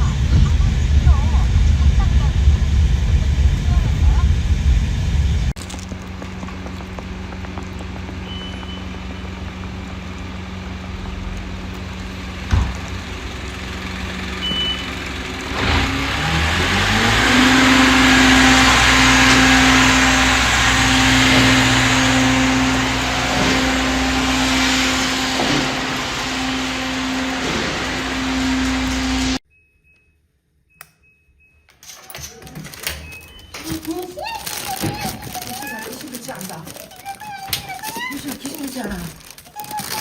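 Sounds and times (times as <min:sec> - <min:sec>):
car engine hum: 0:00.0 - 0:29.4
road and wind noise: 0:00.0 - 0:29.4.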